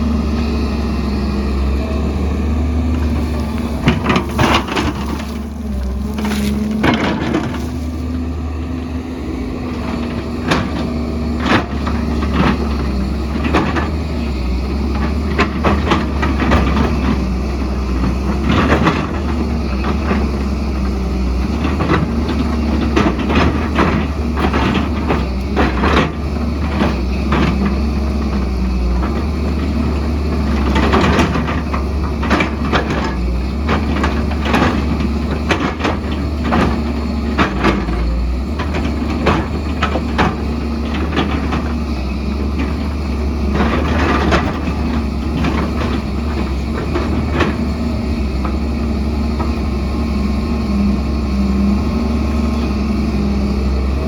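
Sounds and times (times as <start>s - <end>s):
diesel excavator engine running: 0.0s - 54.0s
bucket scraping rock and soil: 3.0s - 8.4s.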